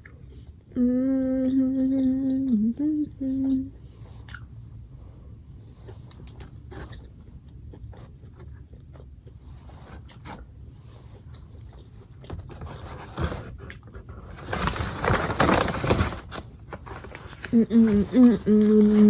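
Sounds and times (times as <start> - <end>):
person chewing food: 5.8 - 14.4.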